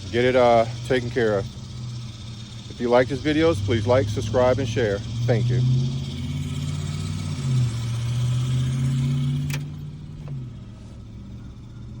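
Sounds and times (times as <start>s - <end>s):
car engine idling: 0.0s - 12.0s
sharp click: 8.9s - 10.4s.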